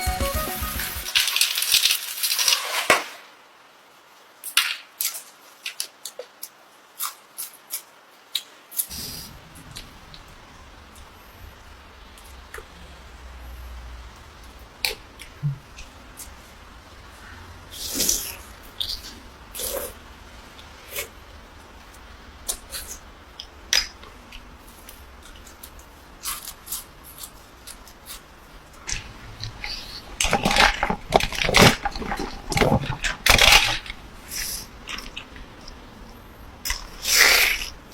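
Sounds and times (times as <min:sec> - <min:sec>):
crackly crunching: 0:14.1 - 0:37.9.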